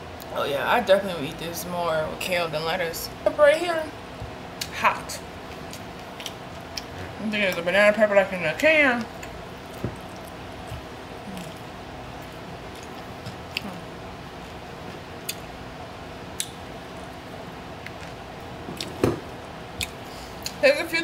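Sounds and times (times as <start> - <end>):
quiet chewing: 5.5 - 7.1, 9.0 - 15.5.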